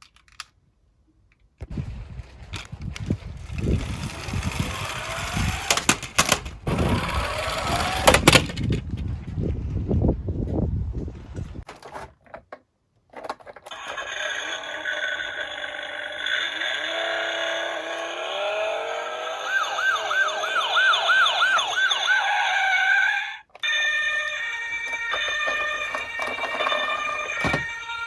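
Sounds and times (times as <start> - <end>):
emergency siren wailing and yelping: 13.7 - 28.0.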